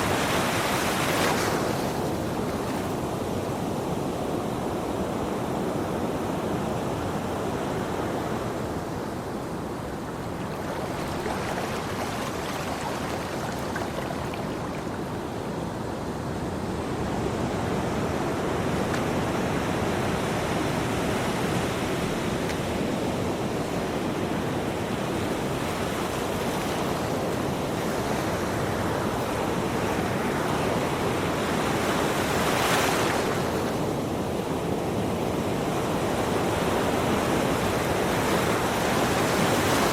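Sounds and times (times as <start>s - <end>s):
ocean waves washing in: 0.0s - 39.9s.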